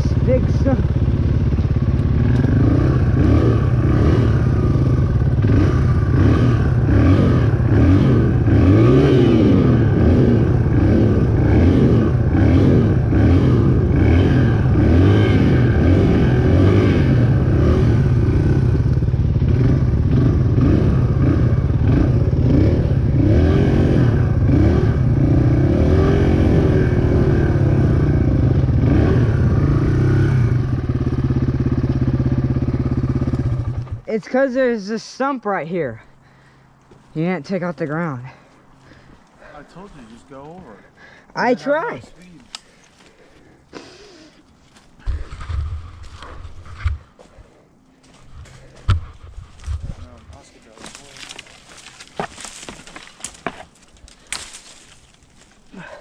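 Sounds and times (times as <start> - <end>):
dirt bike engine revving: 0.0 - 35.4.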